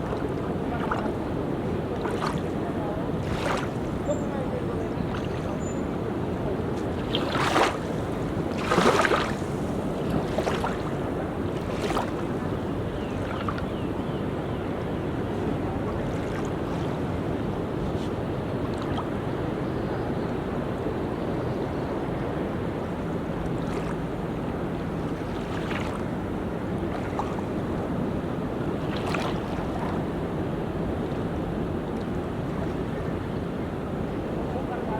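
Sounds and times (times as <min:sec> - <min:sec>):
surf washing onto beach: 0:00.0 - 0:13.7
water splashes: 0:00.0 - 0:13.8, 0:15.2 - 0:19.2, 0:23.4 - 0:33.5.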